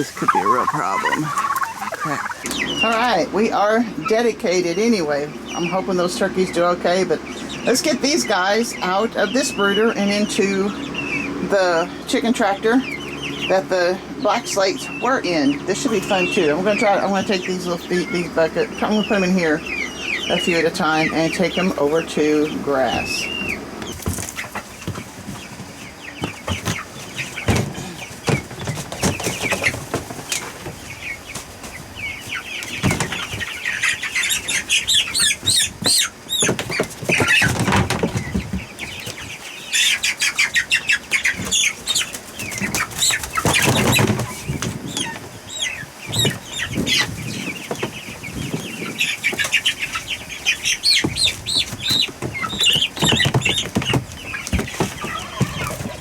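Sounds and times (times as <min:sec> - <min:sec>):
wings flapping and scuffling: 0:00.0 - 0:02.8, 0:23.5 - 0:56.0
chicks high calls: 0:00.0 - 0:56.0
poultry clucking: 0:00.0 - 0:56.0.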